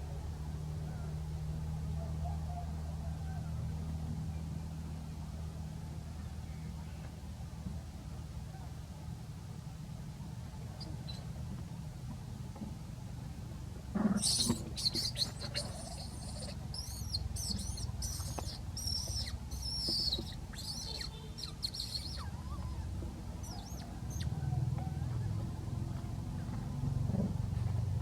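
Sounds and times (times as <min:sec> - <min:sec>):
low steady rumble: 0:00.0 - 0:28.0
high-pitched chirping calls: 0:14.2 - 0:24.4.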